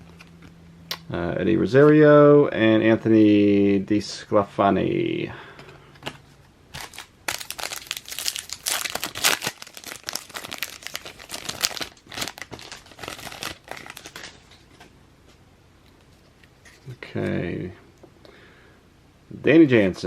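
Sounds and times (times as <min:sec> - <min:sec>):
wrapper crinkling: 0:06.7 - 0:14.9
foil pack tearing open: 0:06.8 - 0:14.6.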